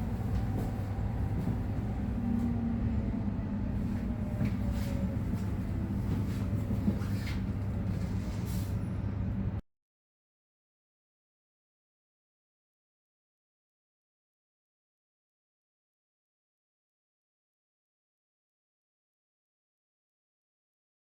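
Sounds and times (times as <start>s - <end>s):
train rumble from inside carriage: 0.0s - 9.6s.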